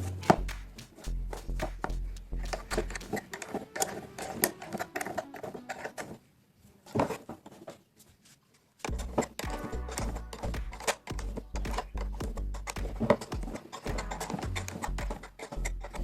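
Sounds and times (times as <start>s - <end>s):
background music: 0.0s - 6.2s, 8.9s - 16.0s
mechanical clicking and tapping: 8.9s - 16.0s.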